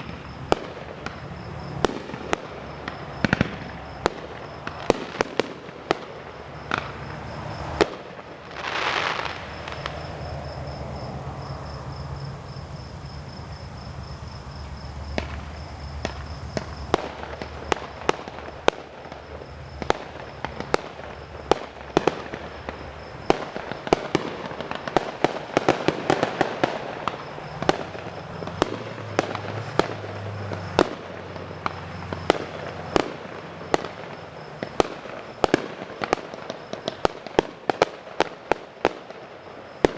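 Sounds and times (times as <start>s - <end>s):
firework crackling: 0.0s - 39.9s
firework rushing hiss: 0.0s - 39.9s
fireworks bangs and pops: 0.0s - 39.9s.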